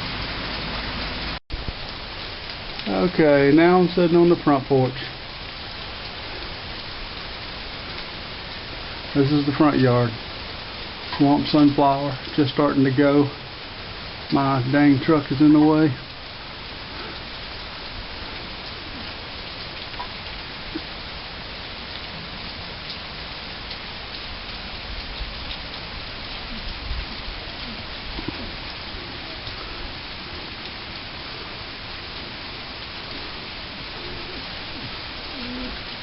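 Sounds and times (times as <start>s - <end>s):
louder raindrops: 0.0s - 36.0s
steady rain hiss: 0.0s - 36.0s.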